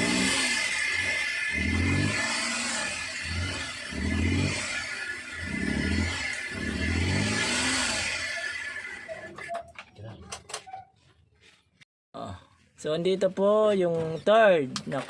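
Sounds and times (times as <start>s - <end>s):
engine revving in quick blips: 0.0s - 9.4s.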